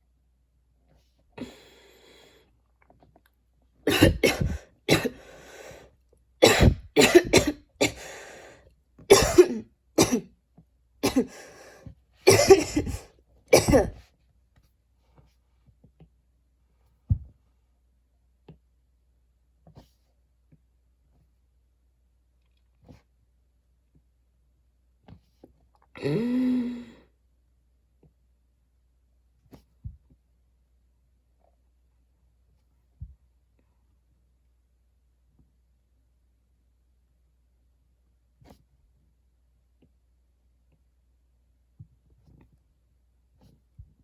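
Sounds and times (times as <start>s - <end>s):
woman coughing: 3.9s - 5.4s, 6.4s - 8.2s, 9.1s - 10.2s, 11.0s - 11.6s, 12.3s - 14.0s
gasping breaths: 4.3s - 5.9s.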